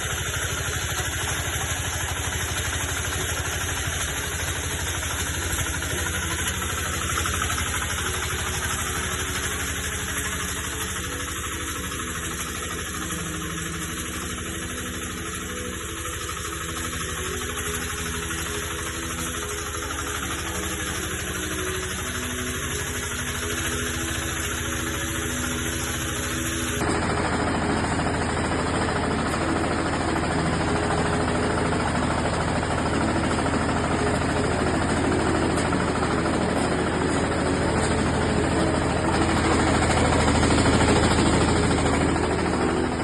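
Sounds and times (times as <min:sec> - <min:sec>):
harvester engine running: 0:00.0 - 0:43.0.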